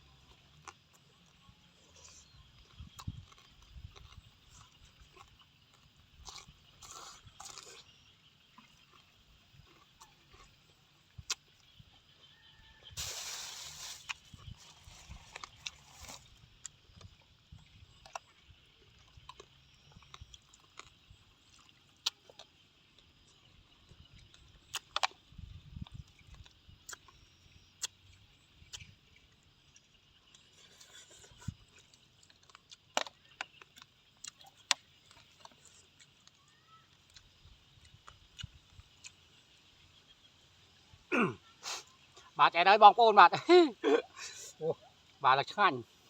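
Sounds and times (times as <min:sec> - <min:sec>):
faint steady hiss: 0:12.3 - 0:18.1.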